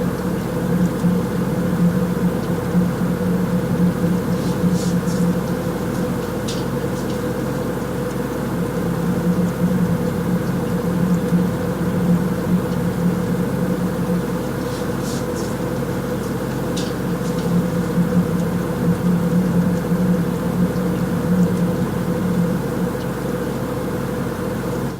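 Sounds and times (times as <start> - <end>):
low electric hum: 0.0 - 24.9.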